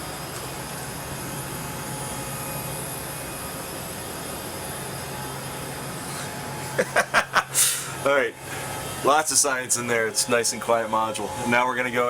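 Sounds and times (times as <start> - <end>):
ventilation fans whirring: 0.0 - 12.0.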